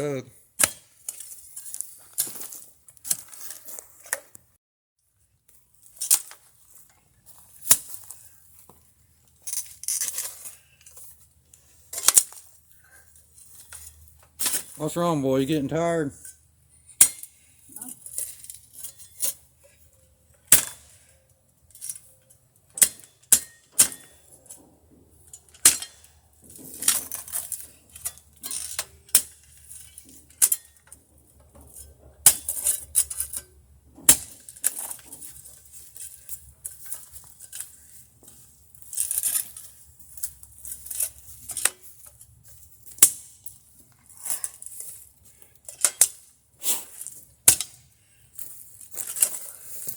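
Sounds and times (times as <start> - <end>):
metal digging tool clinking on stones: 0.6 - 3.7, 9.3 - 11.2, 11.9 - 12.5, 16.1 - 49.9
tool scraping through stony soil: 34.1 - 47.8, 48.4 - 49.9.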